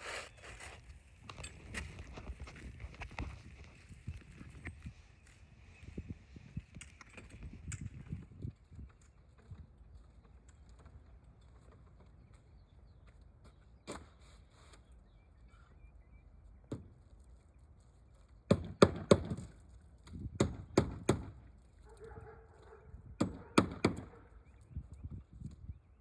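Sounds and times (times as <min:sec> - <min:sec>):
hammer striking shingle roof: 0:18.5 - 0:19.6, 0:20.3 - 0:21.4, 0:23.2 - 0:24.1.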